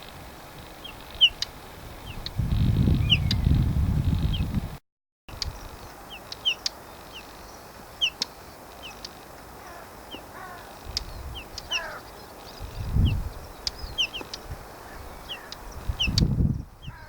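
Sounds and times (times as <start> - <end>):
low wind rumble: 0.0 - 17.0
sharp clicking bird calls: 0.8 - 2.4, 3.0 - 3.6, 5.3 - 12.7, 13.5 - 17.0
low bird chirps: 0.8 - 4.5, 5.3 - 17.0
small birds whistling: 2.9 - 3.6, 5.4 - 17.0.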